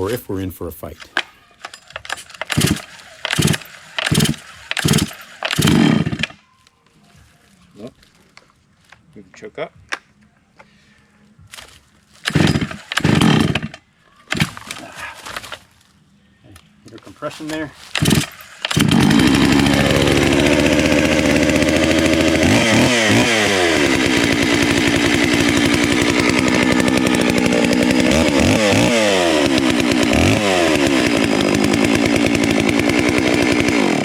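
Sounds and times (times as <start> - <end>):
chainsaw idling and revving: 2.4 - 6.4, 12.3 - 14.4, 18.0 - 34.0.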